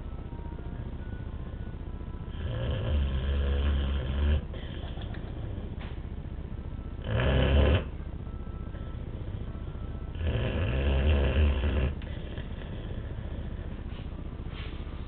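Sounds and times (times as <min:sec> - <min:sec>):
dog snoring: 0:02.3 - 0:05.8, 0:07.0 - 0:08.0, 0:09.0 - 0:13.9.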